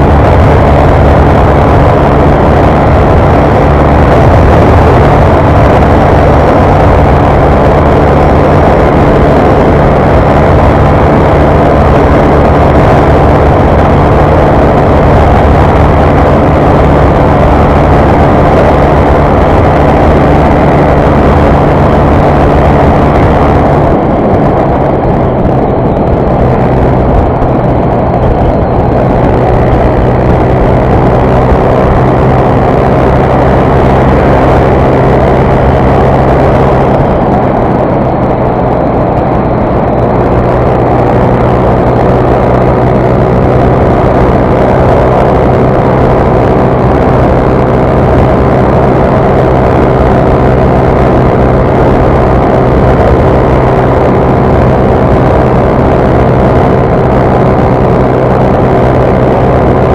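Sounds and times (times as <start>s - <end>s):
motorcycle engine at high revs: 0.0s - 59.9s
rushing wind: 0.0s - 59.9s.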